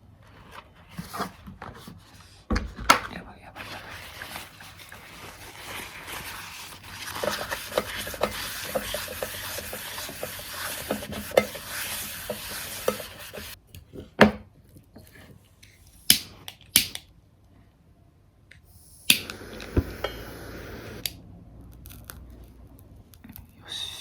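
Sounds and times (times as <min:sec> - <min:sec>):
utensil scraping a pan: 0:03.6 - 0:13.6
food sizzling in a frying pan: 0:06.2 - 0:13.6.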